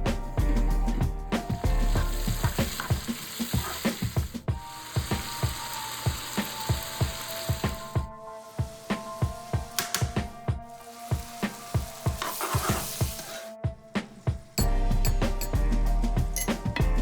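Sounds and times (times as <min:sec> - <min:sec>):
chicken sizzling in a pan: 0:01.4 - 0:13.5.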